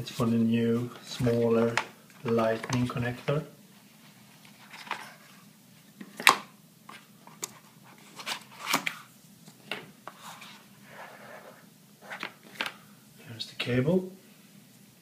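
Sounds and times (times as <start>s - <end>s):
cardboard box and packaging handled: 4.3s - 5.4s, 6.9s - 9.1s.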